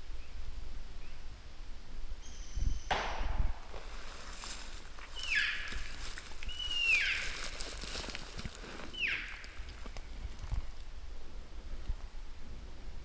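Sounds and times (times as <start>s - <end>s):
elk whistling calls: 4.4s - 10.2s.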